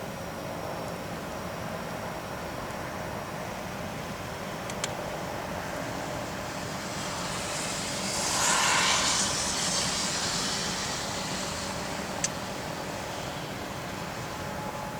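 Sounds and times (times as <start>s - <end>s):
wind and rain hiss: 0.0s - 14.9s
passing vehicle tyre hiss: 3.6s - 14.9s.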